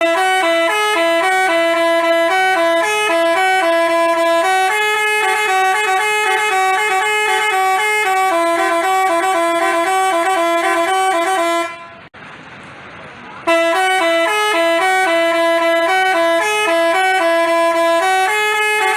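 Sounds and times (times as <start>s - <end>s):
multi-tone air horn melody: 0.0s - 12.1s, 13.4s - 18.9s.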